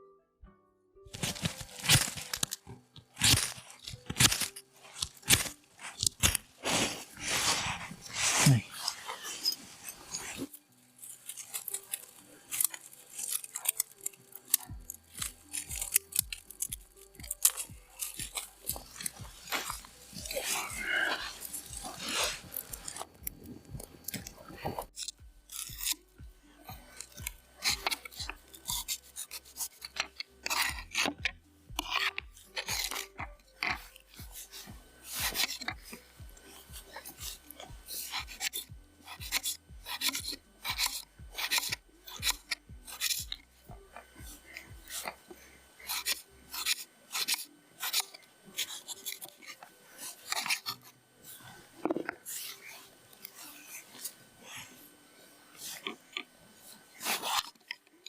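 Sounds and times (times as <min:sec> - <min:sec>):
short scrapes rubs and clicks: 0:01.1 - 0:23.2, 0:26.7 - 0:31.2, 0:31.8 - 0:54.8, 0:55.5 - 0:57.9
short scraping rasping strokes: 0:01.1 - 0:31.2.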